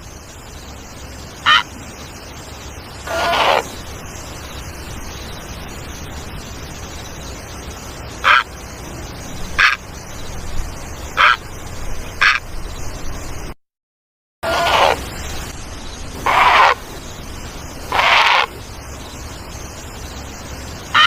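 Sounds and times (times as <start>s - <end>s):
low background noise: 0.0s - 13.5s, 14.4s - 21.0s
egret giving harsh calls: 3.1s - 3.7s, 14.4s - 15.1s, 16.2s - 16.8s, 17.9s - 18.5s.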